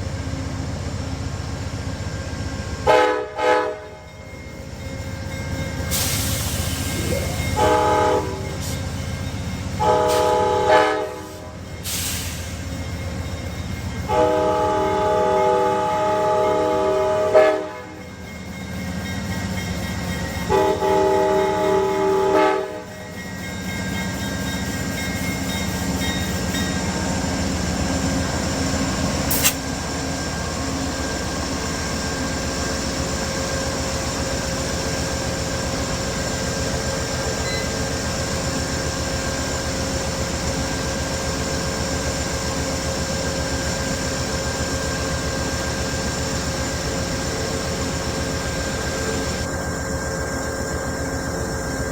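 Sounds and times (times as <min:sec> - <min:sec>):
train running: 0:00.0 - 0:51.9
locomotive horn: 0:02.8 - 0:04.1, 0:07.0 - 0:08.8, 0:09.8 - 0:11.7, 0:14.1 - 0:18.1, 0:20.5 - 0:23.0
sharp click: 0:29.3 - 0:29.6.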